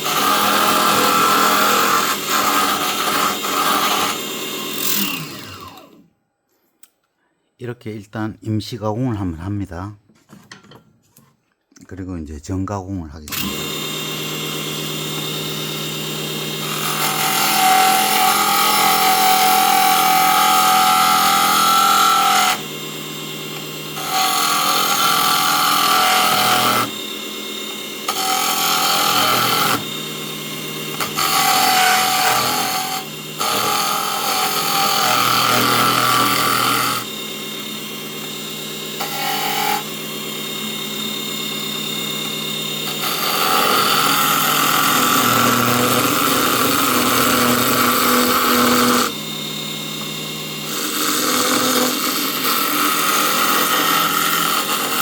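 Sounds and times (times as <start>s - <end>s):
turning tool scraping wood: 0.0s - 5.8s, 24.0s - 27.0s, 28.0s - 30.0s, 30.9s - 37.2s, 38.2s - 39.9s, 42.2s - 49.2s, 50.0s - 55.0s
lathe motor hum: 0.0s - 6.0s, 13.3s - 55.0s.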